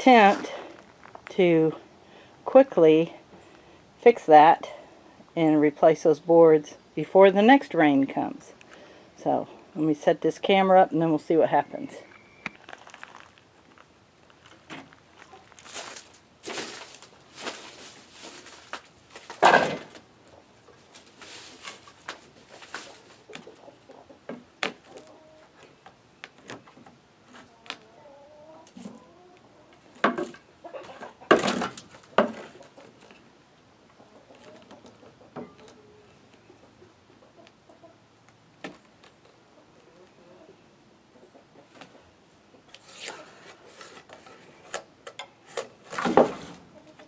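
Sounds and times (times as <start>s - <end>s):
handling knocks and thumps: 15.8s - 20.0s
chickens clucking: 20.1s - 25.9s, 27.3s - 31.4s, 32.0s - 38.3s, 39.1s - 43.8s, 46.6s - 47.0s.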